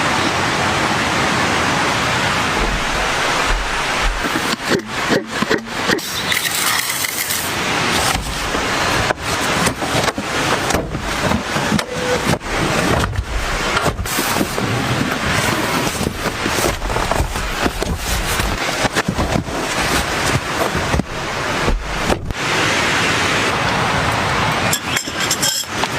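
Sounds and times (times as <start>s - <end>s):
heavy rain: 0.0s - 25.9s
rustling and crackling: 2.5s - 22.4s.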